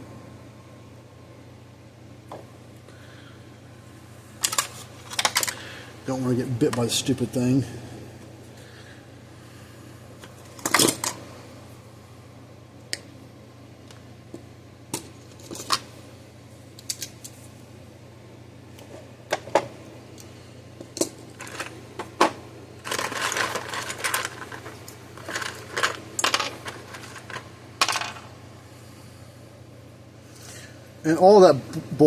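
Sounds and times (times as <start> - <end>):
clattering and scraping: 22.8 - 28.3.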